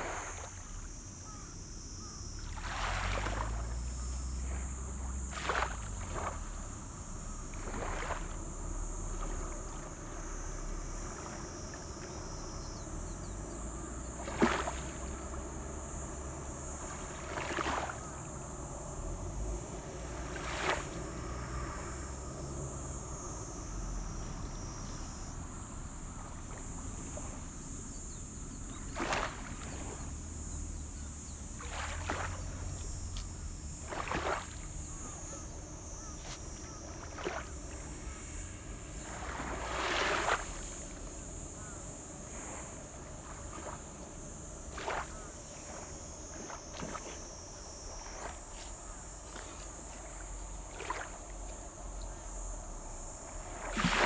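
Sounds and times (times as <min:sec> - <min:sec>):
short splash or swish: 0:05.3 - 0:06.5, 0:31.6 - 0:35.4, 0:36.0 - 0:51.4, 0:53.4 - 0:54.0.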